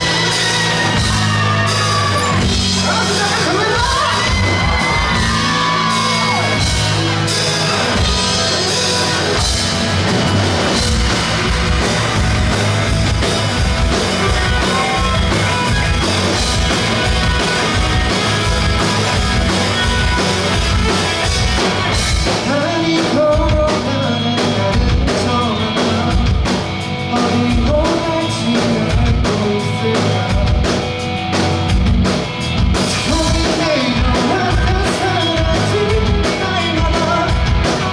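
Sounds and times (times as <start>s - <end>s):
crowd yelling: 0.0s - 22.6s
drums keeping a steady beat: 0.0s - 37.9s
live rock band with singer: 0.0s - 37.9s.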